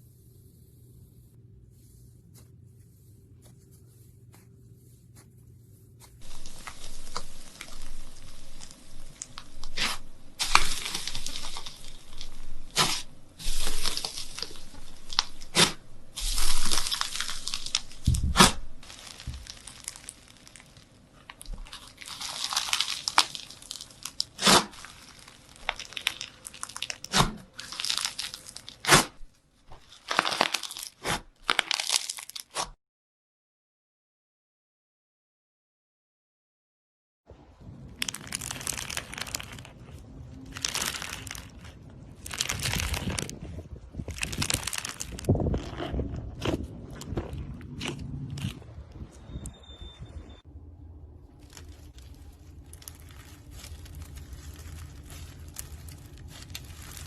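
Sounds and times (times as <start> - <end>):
crunching and tearing: 6.2 - 32.7, 37.6 - 49.1, 51.2 - 57.0.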